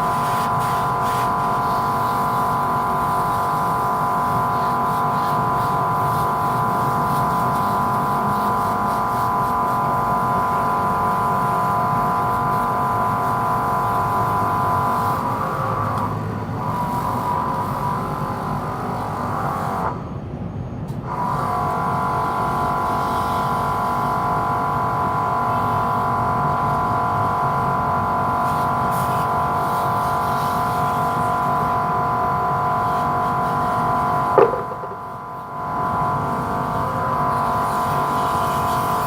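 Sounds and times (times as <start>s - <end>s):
sharp click: 34.4s - 35.1s.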